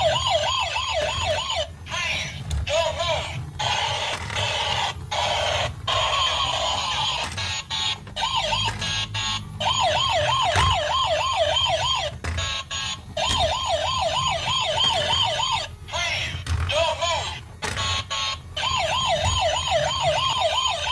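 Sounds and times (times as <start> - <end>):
toy police siren warbling: 0.0 - 20.9
clicks: 3.6 - 15.6.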